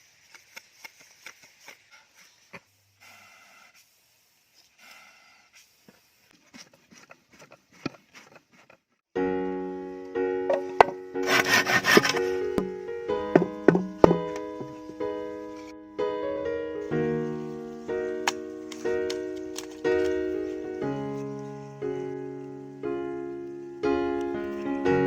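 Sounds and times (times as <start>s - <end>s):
rubbing or scraping sounds: 5.6s - 8.9s, 10.8s - 12.7s
music with plucked keyboard melody: 9.2s - 25.0s.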